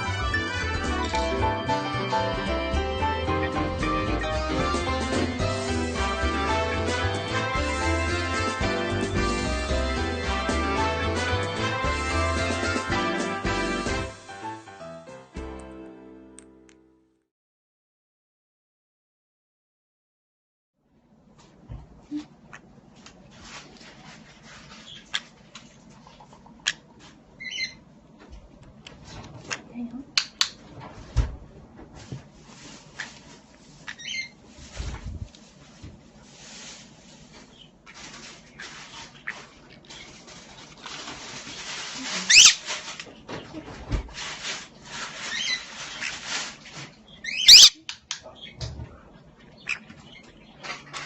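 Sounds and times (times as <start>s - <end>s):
parrot chirp: 27.4s - 27.8s, 33.8s - 34.4s, 42.3s - 42.6s, 45.2s - 46.3s, 47.1s - 48.6s, 49.5s - 50.6s.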